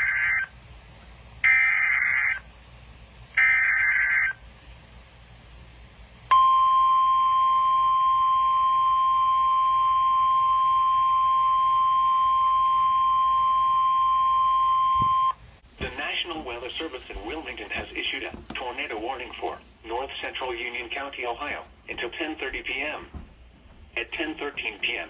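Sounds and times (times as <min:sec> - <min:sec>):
steady single-pitch attention tone: 0:06.3 - 0:15.4.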